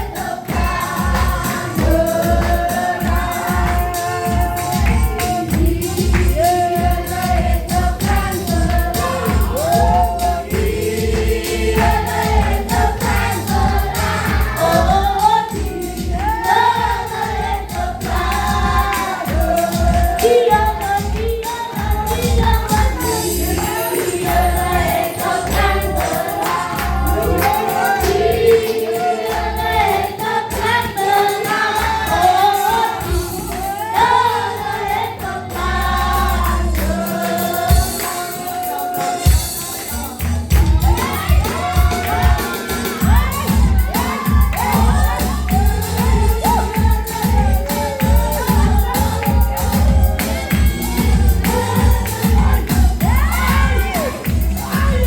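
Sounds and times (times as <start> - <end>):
choir singing gospel: 0.0 - 55.0
pulsing low bass: 26.8 - 28.5, 43.0 - 55.0.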